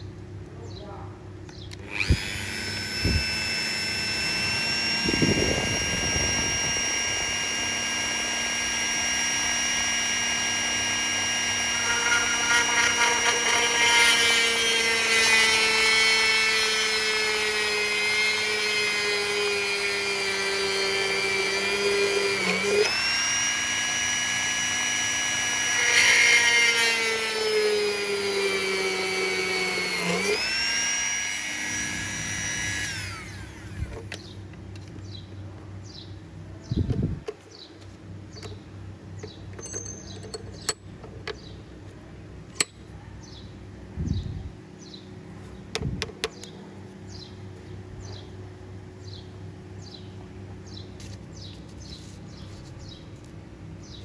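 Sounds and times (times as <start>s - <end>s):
power tool motor whining: 1.6s - 34.4s.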